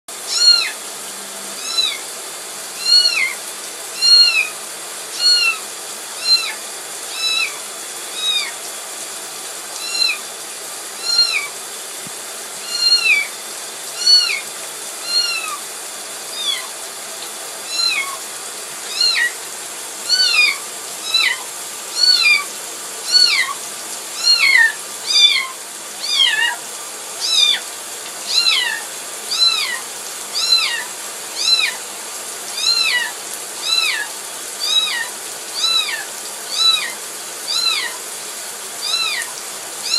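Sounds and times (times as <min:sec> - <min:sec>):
kitten meowing in distress: 0:00.3 - 0:00.8, 0:01.6 - 0:02.0, 0:02.8 - 0:03.4, 0:04.0 - 0:04.6, 0:05.2 - 0:05.6, 0:06.2 - 0:08.6, 0:09.8 - 0:10.2, 0:11.0 - 0:11.5, 0:12.6 - 0:13.4, 0:14.0 - 0:14.4, 0:15.0 - 0:15.6, 0:16.3 - 0:16.8, 0:17.7 - 0:18.2, 0:18.9 - 0:19.4, 0:20.0 - 0:21.4, 0:22.0 - 0:22.5, 0:23.1 - 0:23.6, 0:24.2 - 0:26.6, 0:27.2 - 0:27.6, 0:28.3 - 0:31.8, 0:32.6 - 0:38.0, 0:38.8 - 0:39.9.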